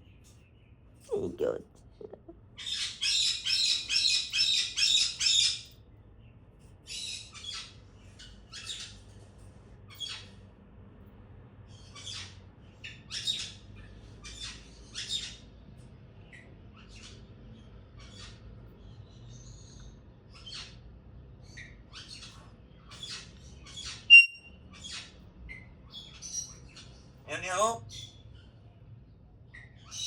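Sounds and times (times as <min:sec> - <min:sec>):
parrot chirps and squawks: 0:01.0 - 0:05.7, 0:21.4 - 0:28.6
sharp whistled chirp: 0:24.1 - 0:24.6.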